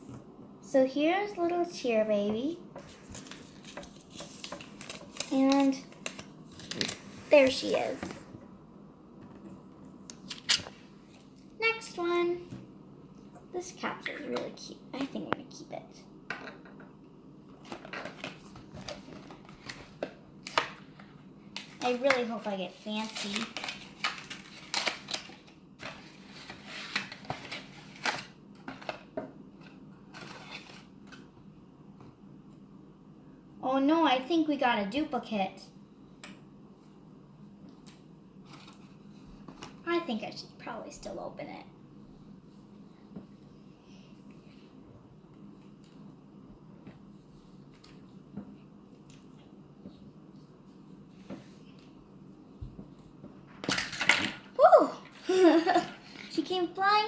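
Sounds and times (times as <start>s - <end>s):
plastic and cardboard crinkling: 2.8s - 8.1s, 21.6s - 29.0s
plastic package tearing open: 23.0s - 25.5s.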